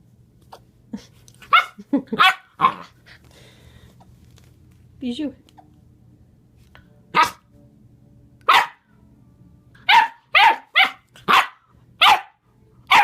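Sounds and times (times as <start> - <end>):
dog barking: 1.5 - 2.9, 7.2 - 7.4, 8.5 - 8.8, 9.9 - 13.0.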